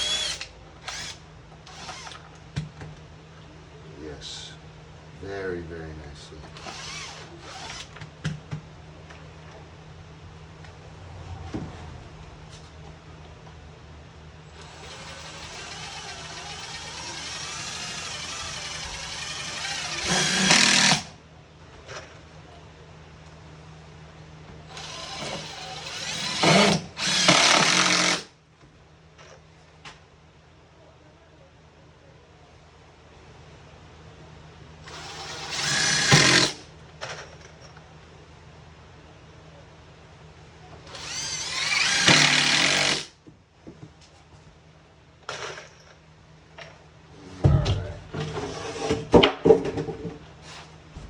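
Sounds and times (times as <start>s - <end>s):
power drill driving screw: 0.0s - 2.2s, 6.6s - 7.9s, 14.6s - 21.1s, 24.7s - 28.3s, 34.9s - 36.6s, 40.9s - 43.1s.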